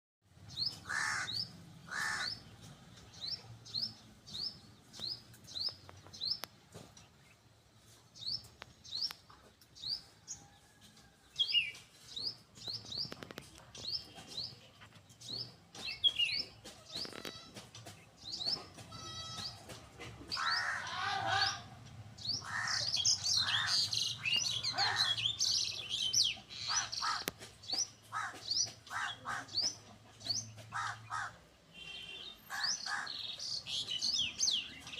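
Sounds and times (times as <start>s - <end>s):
lower louder bird calls: 0.5s - 2.6s, 20.3s - 34.9s.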